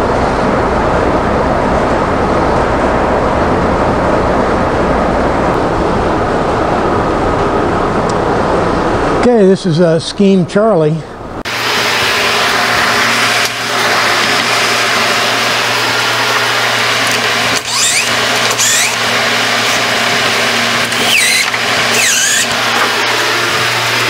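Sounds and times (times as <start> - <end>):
machine motor humming: 11.5 - 24.0
high squealing glides: 17.6 - 19.8, 20.9 - 23.1.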